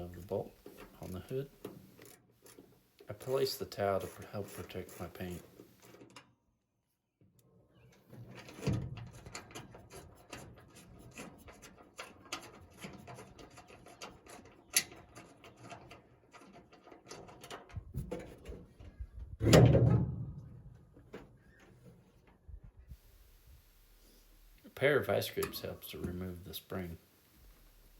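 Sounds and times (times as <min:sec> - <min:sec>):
clicking and clinking of metal: 0:08.2 - 0:18.6
loud metal clunk: 0:19.4 - 0:20.7.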